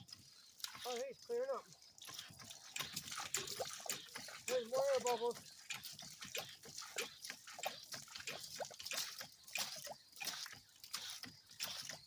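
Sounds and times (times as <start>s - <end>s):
water splashing and sputtering: 0.0s - 12.0s.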